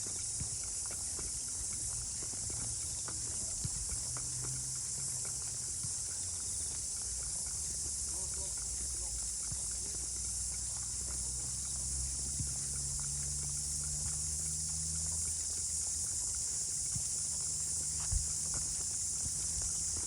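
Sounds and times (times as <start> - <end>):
insect chorus drone: 0.0 - 20.0
low steady rumble: 7.6 - 20.0.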